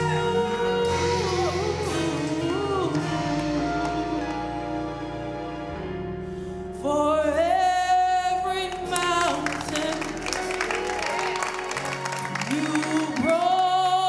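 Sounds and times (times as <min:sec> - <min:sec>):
person singing with vibrato: 0:00.0 - 0:14.0
sustained instrumental chords: 0:00.0 - 0:14.0.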